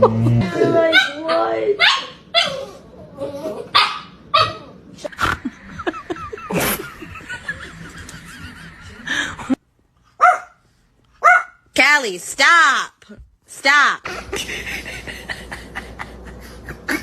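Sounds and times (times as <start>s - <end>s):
dog barking: 0.9s - 2.7s, 3.7s - 4.6s, 10.2s - 10.6s, 11.2s - 11.6s.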